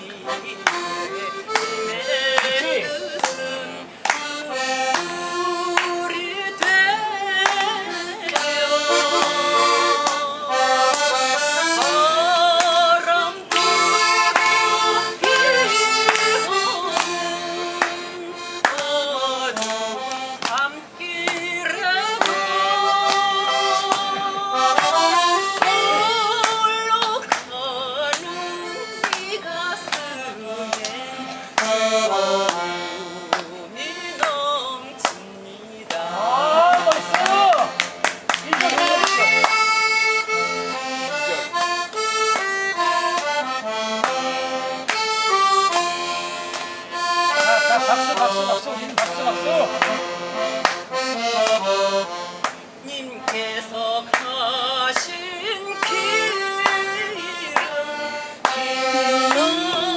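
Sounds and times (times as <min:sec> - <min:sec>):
audience clapping along: 0:01.5 - 0:04.3, 0:04.9 - 0:06.0, 0:06.6 - 0:10.3, 0:10.9 - 0:11.1, 0:11.8 - 0:18.0, 0:18.6 - 0:28.3, 0:29.0 - 0:31.8, 0:35.9 - 0:39.7, 0:44.0 - 0:44.2, 0:45.7 - 0:51.6, 0:52.4 - 0:53.5, 0:54.1 - 0:55.2, 0:55.8 - 0:57.8, 0:58.4 - 0:59.9.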